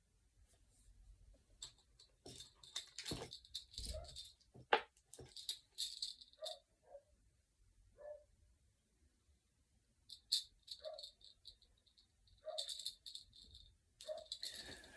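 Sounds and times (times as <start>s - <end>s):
plastic toys clicking and rattling: 1.6s - 4.4s, 5.0s - 6.6s, 12.4s - 14.9s.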